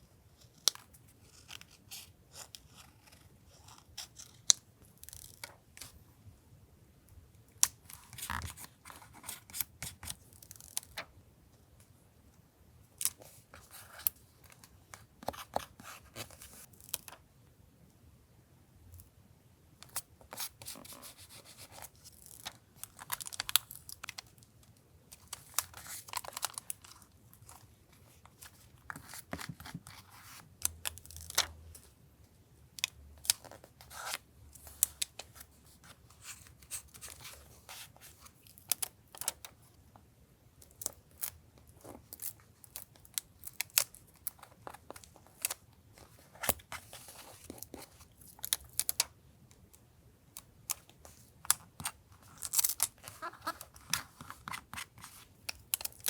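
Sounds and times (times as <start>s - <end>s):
paper crinkling and tearing: 51.8s - 56.0s.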